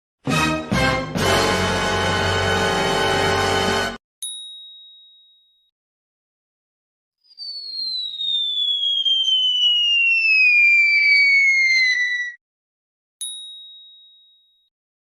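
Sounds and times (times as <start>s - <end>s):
falling whistle: 7.2s - 12.4s.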